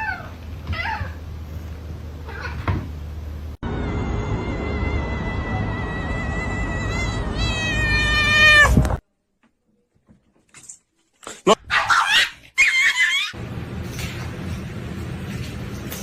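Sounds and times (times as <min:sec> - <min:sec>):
cat meowing: 0:04.2 - 0:08.9.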